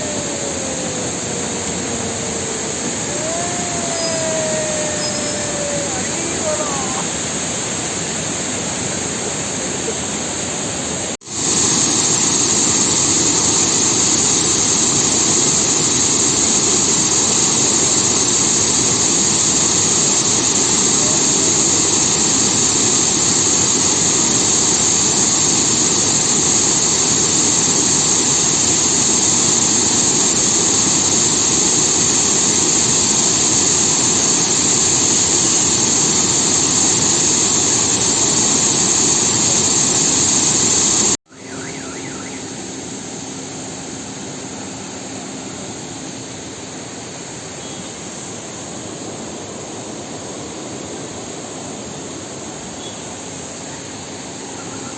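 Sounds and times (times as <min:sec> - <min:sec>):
waterfall crashing: 0:00.0 - 0:08.5.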